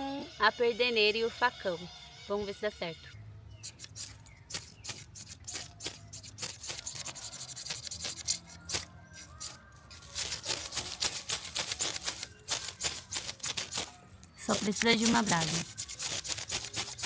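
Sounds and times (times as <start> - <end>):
blade scraping a ferro rod: 3.6 - 17.0.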